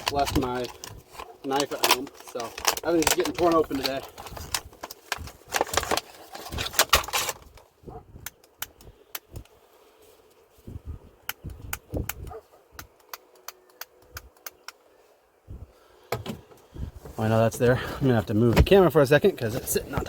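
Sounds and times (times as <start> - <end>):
packaging being torn open: 0.0 - 7.6
clicks and knocks of handling: 0.0 - 9.6, 11.2 - 14.8.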